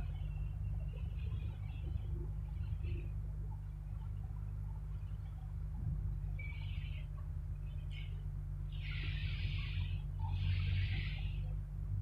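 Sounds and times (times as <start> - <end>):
steady low hum: 0.0 - 12.0
slow scraping strokes: 7.7 - 11.6.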